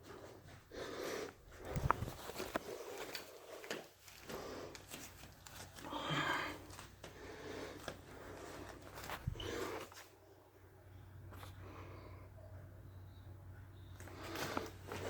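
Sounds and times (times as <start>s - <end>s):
man breathing hard: 0.0s - 5.1s, 5.8s - 10.0s
rustles and knocks of movement: 1.3s - 10.2s, 13.9s - 15.0s.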